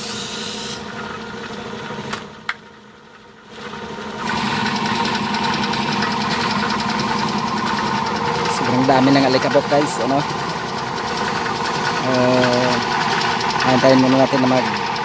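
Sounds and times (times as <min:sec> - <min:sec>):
compressed air hiss: 0:00.0 - 0:00.8
air compressor running: 0:00.0 - 0:02.1, 0:03.4 - 0:15.0.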